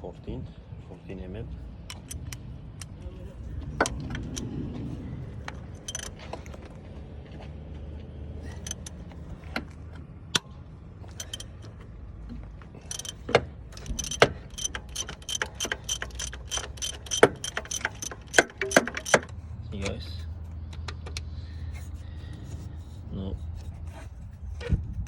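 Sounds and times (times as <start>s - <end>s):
ratchet wrench clicking: 1.9s - 3.0s, 3.7s - 4.6s, 5.3s - 6.3s, 8.5s - 9.2s, 11.1s - 11.8s, 12.8s - 19.4s.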